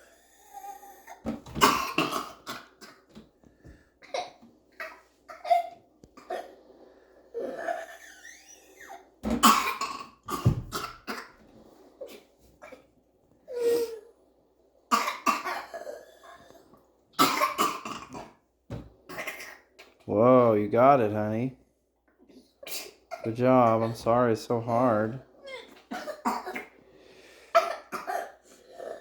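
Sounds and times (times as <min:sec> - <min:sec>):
person coughing: 0:01.6 - 0:03.1, 0:09.3 - 0:11.4, 0:14.9 - 0:16.0, 0:17.2 - 0:18.4, 0:25.9 - 0:26.8, 0:27.5 - 0:29.0
wheezy breathing: 0:06.2 - 0:09.2, 0:26.8 - 0:27.6.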